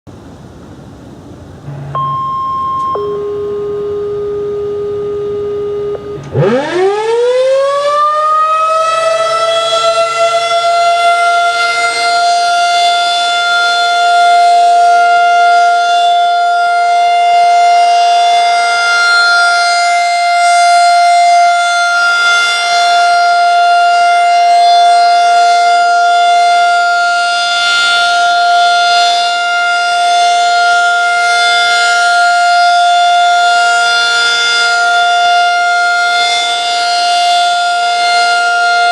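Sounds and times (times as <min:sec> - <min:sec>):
steady tone: 0:01.6 - 0:06.8
tornado siren wailing: 0:01.6 - 0:38.9.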